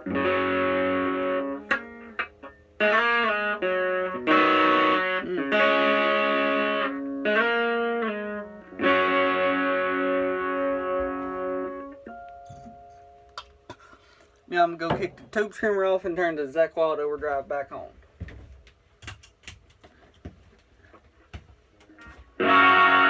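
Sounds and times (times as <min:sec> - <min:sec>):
overdriven electric guitar chords: 0:00.0 - 0:14.2, 0:22.0 - 0:23.0.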